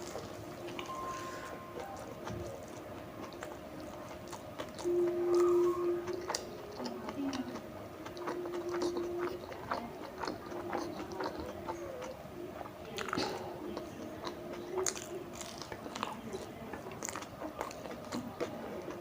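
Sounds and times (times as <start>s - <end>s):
close chewing and biting: 0.0s - 19.0s.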